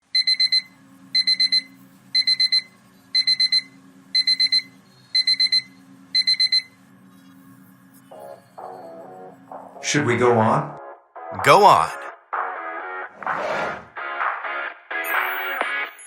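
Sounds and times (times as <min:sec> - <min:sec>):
electronic alarm beeping: 0:00.0 - 0:07.4.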